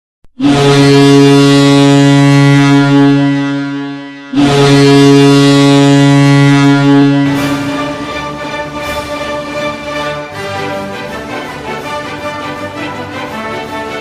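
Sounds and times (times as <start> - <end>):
hockey goal horn blasts: 0.3 - 9.0.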